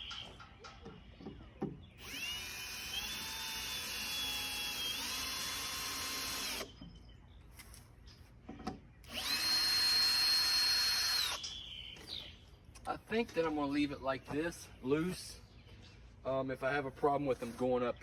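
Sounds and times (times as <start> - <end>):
power drill whining: 2.0 - 6.8, 9.0 - 11.4.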